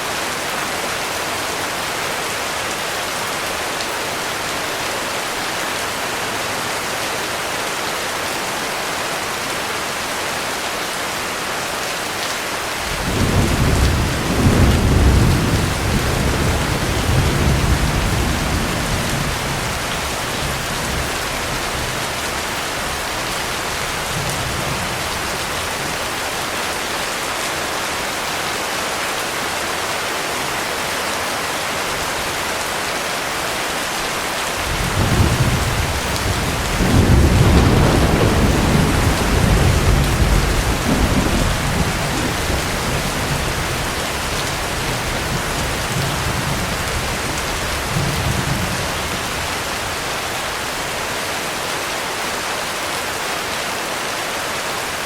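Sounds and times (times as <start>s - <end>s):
heavy rain: 0.0s - 55.0s
thunder rumbling: 12.9s - 26.0s, 34.6s - 49.6s.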